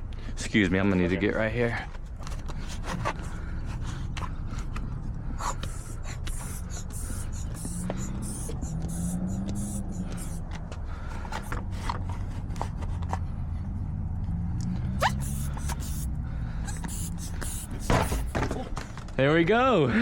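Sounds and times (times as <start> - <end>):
steady low hum: 0.0 - 18.7
tool scraping on door lock: 5.5 - 10.5, 16.7 - 18.5.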